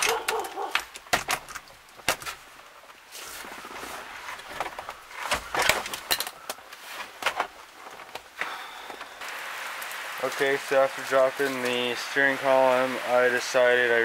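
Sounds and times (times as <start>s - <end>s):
hand tools and metal parts knocking: 0.0s - 2.4s, 4.5s - 6.6s.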